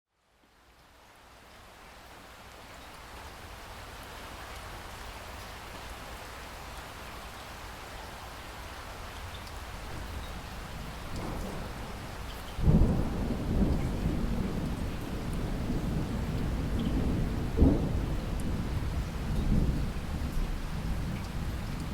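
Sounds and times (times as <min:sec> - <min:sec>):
heavy rain hissing: 0:06.0 - 0:21.9
thunder clap rumbling: 0:10.8 - 0:21.9.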